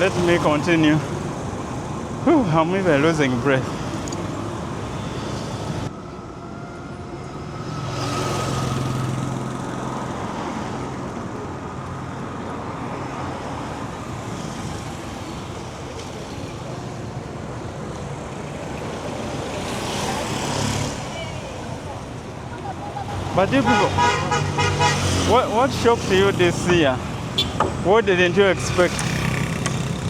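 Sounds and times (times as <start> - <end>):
vehicles passing on busy road: 0.0 - 30.0.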